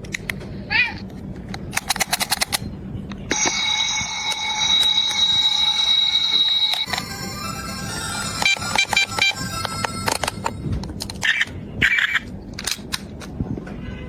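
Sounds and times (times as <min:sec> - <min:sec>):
electronic alarm tone: 0:03.3 - 0:10.1.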